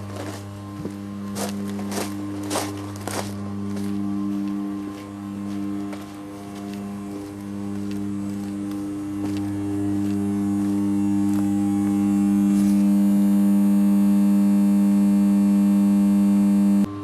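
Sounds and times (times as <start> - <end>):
electrical hum: 0.0 - 17.0.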